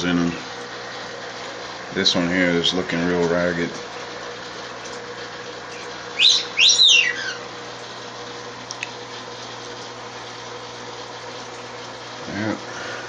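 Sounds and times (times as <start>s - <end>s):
steady low hum: 0.0s - 13.0s
parakeet chirping: 6.2s - 7.4s.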